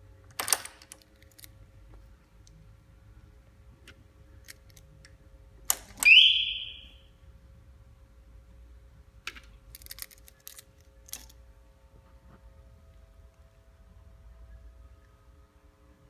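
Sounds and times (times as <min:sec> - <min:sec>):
alarm siren chirp: 0:06.0 - 0:07.1.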